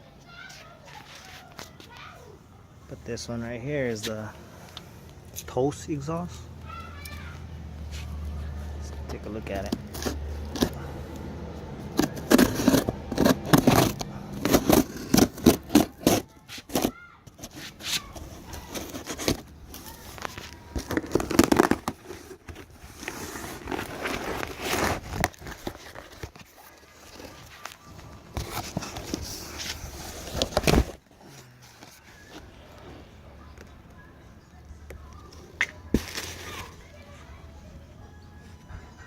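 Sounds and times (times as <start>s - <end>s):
packaging crinkling and rustling: 11.9s - 32.7s, 35.9s - 37.0s.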